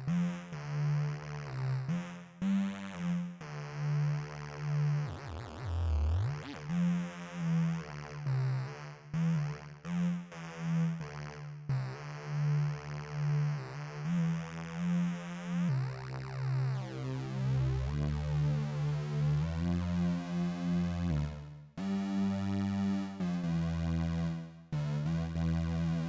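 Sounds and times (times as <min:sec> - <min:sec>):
synthesizer pulsing low notes: 0:17.8 - 0:26.0.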